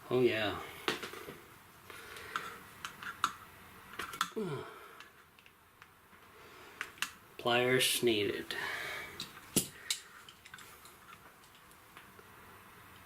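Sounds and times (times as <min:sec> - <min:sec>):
person humming: 0:04.4 - 0:04.9.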